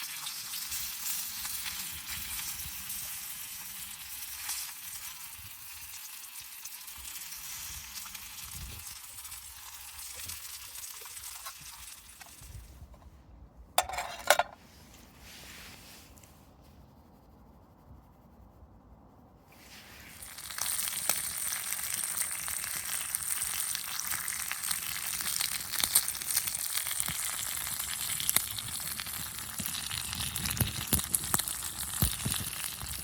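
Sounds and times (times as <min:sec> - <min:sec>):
bacon sizzling and crackling: 0:00.0 - 0:12.3, 0:20.2 - 0:33.0.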